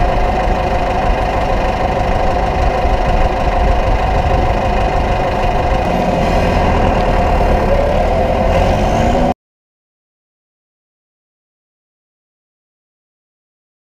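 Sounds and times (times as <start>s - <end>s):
tractor engine running: 0.0s - 9.4s.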